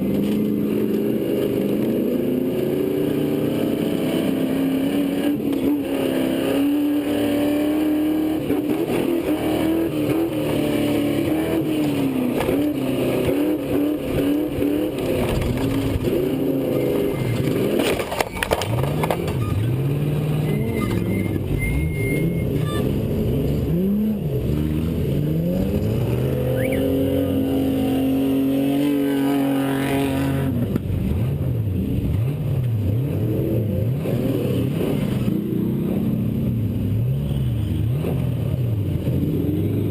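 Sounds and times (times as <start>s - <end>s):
race truck engine revving: 0.2s - 30.8s.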